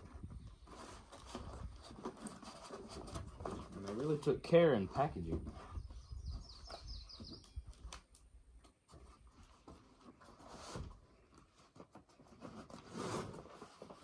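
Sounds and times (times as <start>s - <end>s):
high bird chirps: 5.8s - 7.7s.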